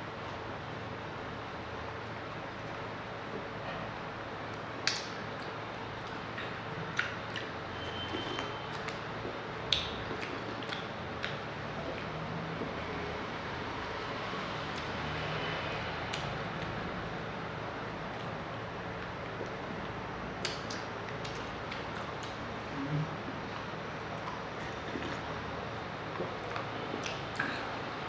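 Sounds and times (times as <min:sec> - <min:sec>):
people swallowing and slurping: 0:21.2 - 0:25.5.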